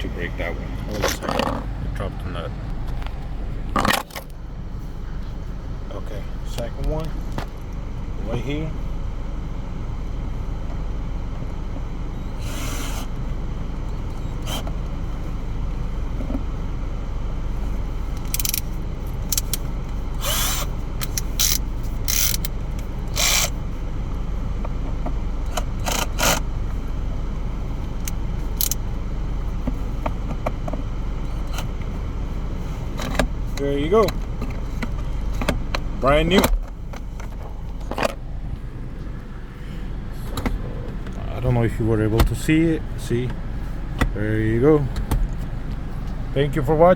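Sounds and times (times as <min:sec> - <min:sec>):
steady low rumble: 0:00.0 - 0:46.9
hand tool clicking on plastic: 0:19.3 - 0:19.6.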